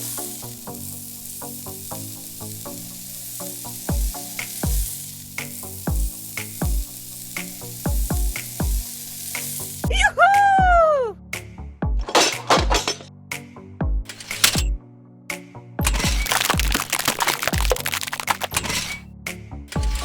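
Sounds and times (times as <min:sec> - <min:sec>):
high hiss: 0:00.0 - 0:09.9
electronic music with kick drum: 0:03.9 - 0:06.9, 0:07.8 - 0:08.9, 0:09.8 - 0:10.8, 0:11.8 - 0:12.7, 0:13.8 - 0:14.8.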